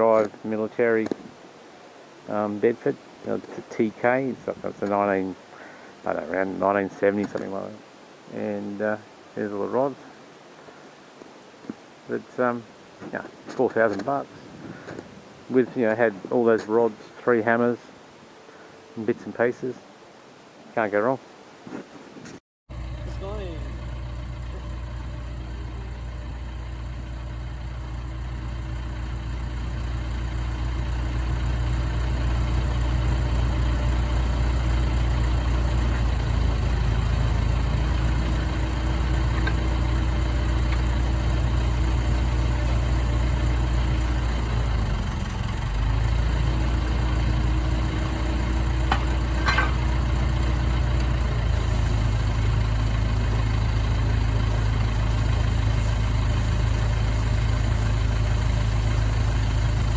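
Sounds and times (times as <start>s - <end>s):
diesel engine idling: 22.7s - 59.9s.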